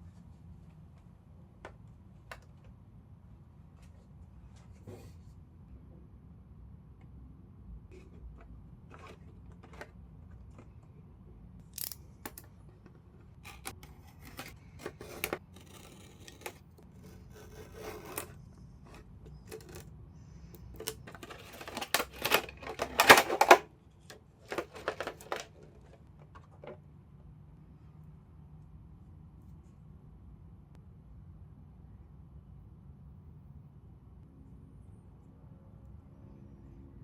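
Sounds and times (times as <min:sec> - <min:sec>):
scraping and rustling packaging: 0:12.7 - 0:19.9, 0:20.6 - 0:26.8
packaging clicks and taps: 0:18.9 - 0:19.8, 0:24.4 - 0:25.8.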